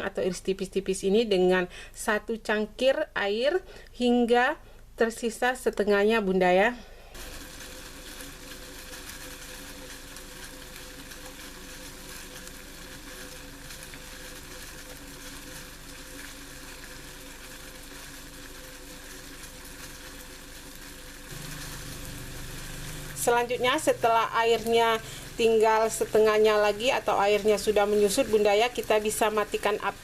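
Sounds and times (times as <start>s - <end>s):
water simmering in a pot: 7.2s - 30.0s.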